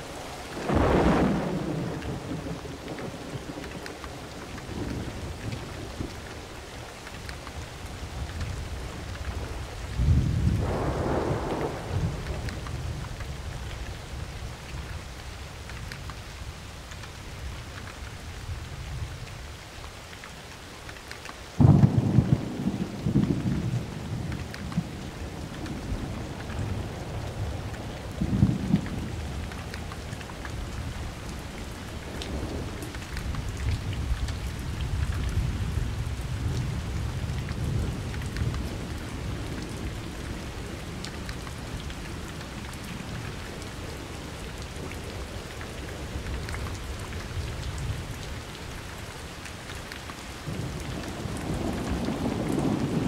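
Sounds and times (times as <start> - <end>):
steady rain falling: 0.0 - 53.0
thunder rumbling: 0.5 - 6.6, 7.9 - 15.9, 21.6 - 49.0, 50.4 - 53.0
sharp crack of thunder: 0.6 - 3.5, 10.0 - 13.5, 21.6 - 30.0, 50.5 - 53.0.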